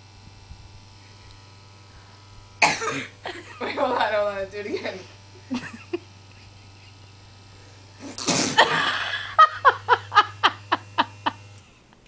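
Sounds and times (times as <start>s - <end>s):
electric massager humming: 0.0s - 12.0s
person sneezing: 2.6s - 3.2s, 8.0s - 9.0s
person laughing: 2.9s - 4.2s, 4.8s - 7.2s, 8.2s - 11.6s.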